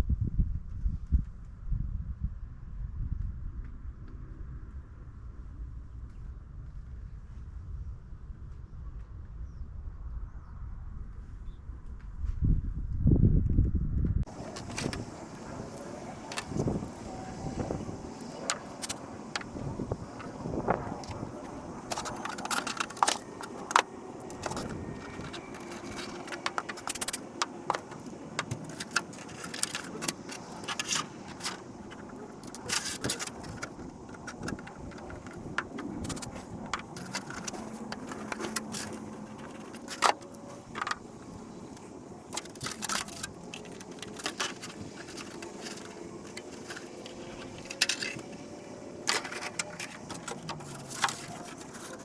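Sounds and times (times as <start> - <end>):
tools clicking and tapping: 14.3 - 17.1, 18.2 - 41.1.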